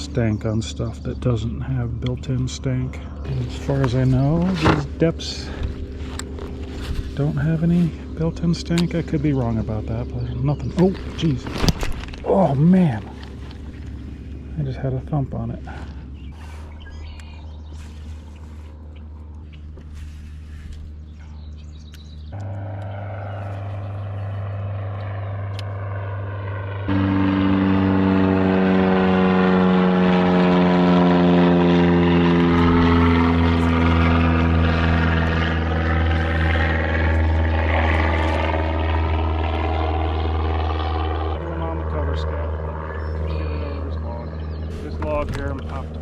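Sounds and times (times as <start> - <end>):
propeller airplane engine drone: 0.0 - 46.0.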